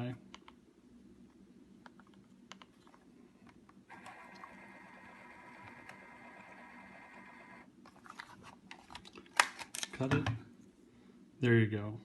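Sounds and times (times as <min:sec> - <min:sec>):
label printer motor whirring: 0:03.9 - 0:07.7.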